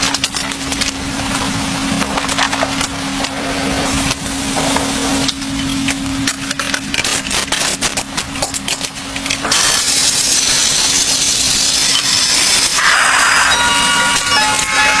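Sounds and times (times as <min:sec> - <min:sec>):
steady hiss: 0:09.4 - 0:15.0.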